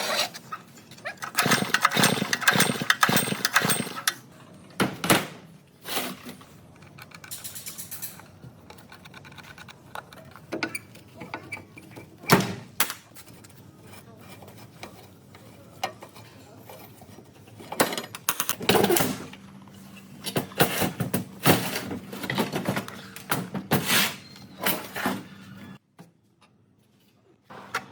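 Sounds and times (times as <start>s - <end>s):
metal tools clattering and knocking: 6.8s - 12.2s, 14.4s - 19.1s.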